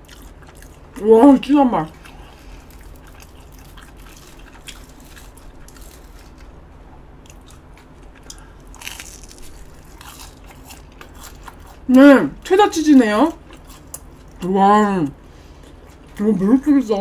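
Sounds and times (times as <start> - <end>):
crunchy chewing: 0.0 - 1.0, 1.9 - 11.9, 13.2 - 14.5, 15.2 - 16.4.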